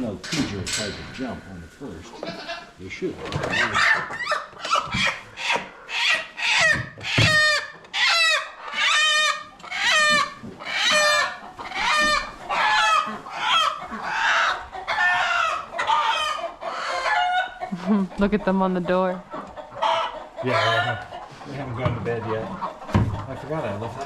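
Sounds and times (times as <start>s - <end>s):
chicken squawking: 2.1s - 18.4s, 19.0s - 21.5s.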